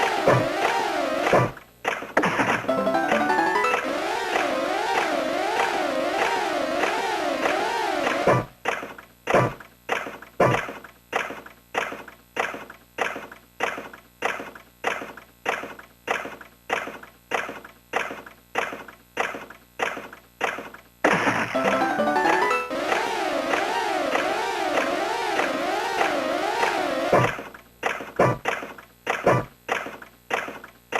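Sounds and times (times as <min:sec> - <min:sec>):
pachinko machine chime strikes: 0:00.0 - 0:01.6, 0:02.7 - 0:08.6, 0:21.5 - 0:27.4.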